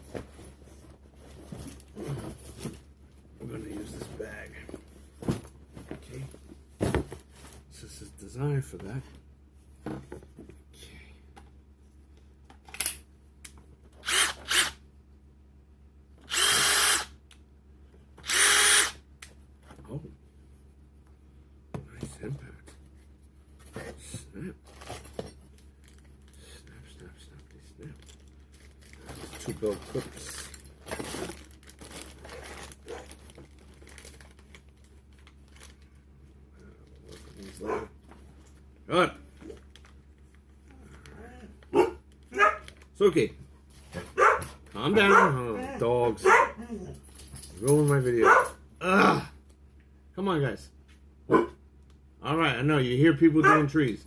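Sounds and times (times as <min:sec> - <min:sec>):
impact driver motor whining: 0:14.0 - 0:14.8, 0:16.2 - 0:17.2, 0:18.2 - 0:19.0
packaging crinkling: 0:30.1 - 0:35.9.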